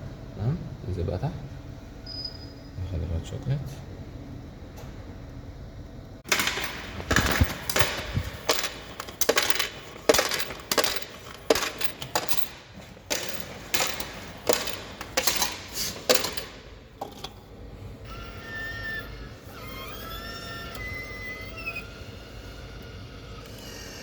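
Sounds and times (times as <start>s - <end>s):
vending machine clicks and clatters: 6.2s - 17.4s.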